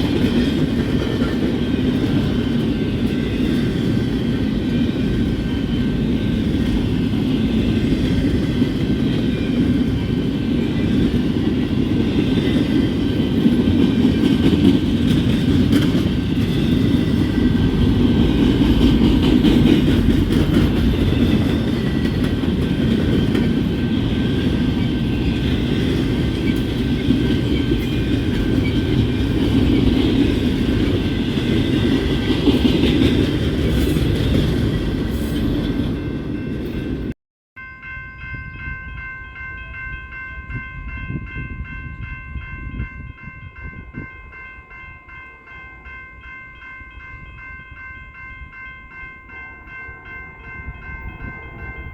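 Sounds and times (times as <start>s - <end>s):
train wheels rumbling on rail: 0.0s - 37.2s
pulsing ringing tone: 37.6s - 51.9s.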